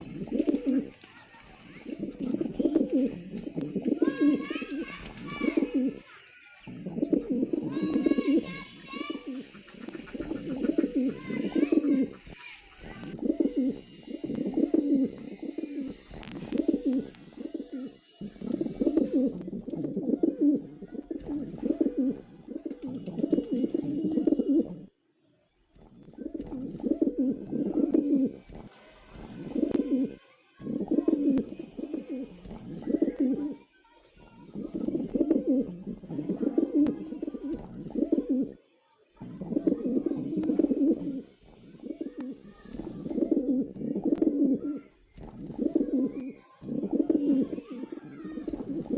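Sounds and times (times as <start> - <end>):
pigeons cooing: 0.0 - 1.0, 1.6 - 24.9, 25.8 - 33.6, 34.3 - 38.6, 39.2 - 48.9.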